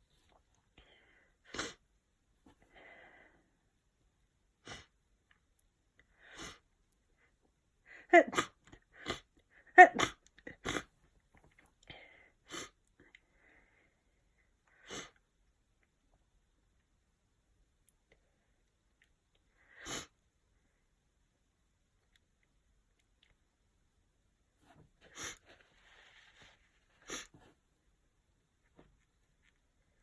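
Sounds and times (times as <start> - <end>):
sniffs and breaths: 0.2 - 1.9, 6.1 - 7.4, 11.8 - 15.2, 24.6 - 27.7
person sneezing: 1.5 - 1.8, 8.0 - 10.9.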